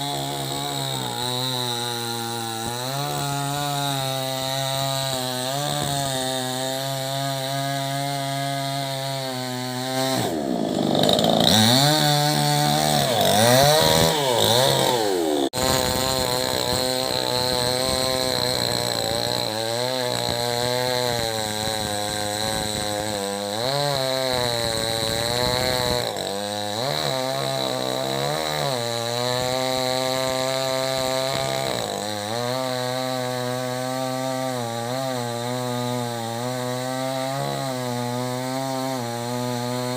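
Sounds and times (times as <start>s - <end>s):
chainsaw engine running hard: 0.0s - 39.9s.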